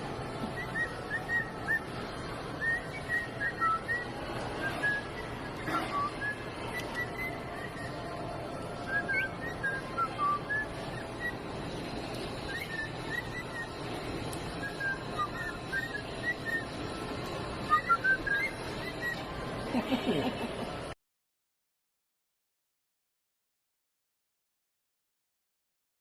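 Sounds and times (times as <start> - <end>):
cockatiel whistling: 0.4 - 2.0, 2.6 - 8.0, 8.8 - 11.5, 12.4 - 17.0, 17.6 - 19.3.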